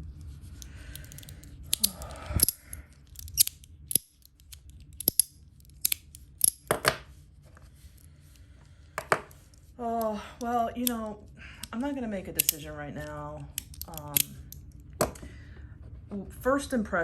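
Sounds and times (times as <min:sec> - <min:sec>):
fidget slider clicking: 0:01.0 - 0:06.6.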